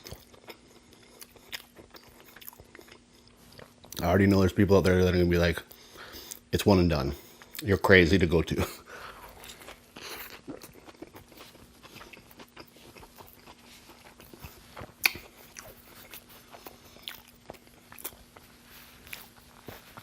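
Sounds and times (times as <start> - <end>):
person chewing with wet smacks: 0.0 - 5.0, 5.7 - 6.5, 7.2 - 7.9, 8.5 - 20.0
faint steady hum: 0.0 - 20.0.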